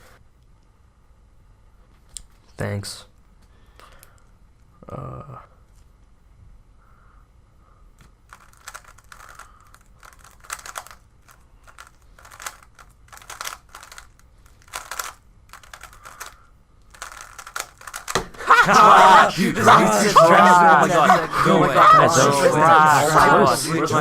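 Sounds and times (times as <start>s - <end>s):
puzzle cube clicking: 8.3s - 11.0s, 11.6s - 18.4s.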